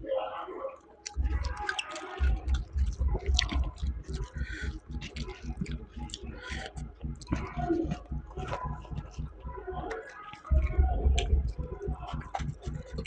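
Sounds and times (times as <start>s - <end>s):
wet mouth clicks and smacks: 1.0s - 7.4s
person chewing: 1.0s - 13.0s.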